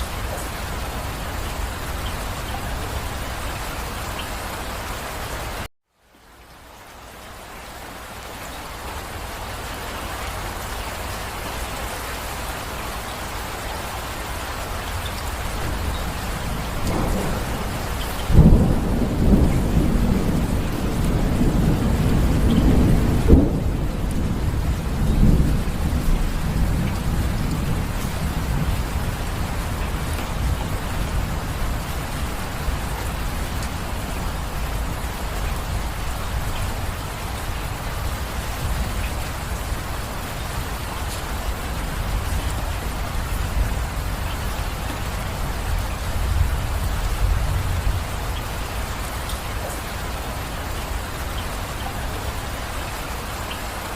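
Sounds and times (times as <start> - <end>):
steady rain: 0.0 - 53.9
thunder crack and rumble: 15.0 - 51.2.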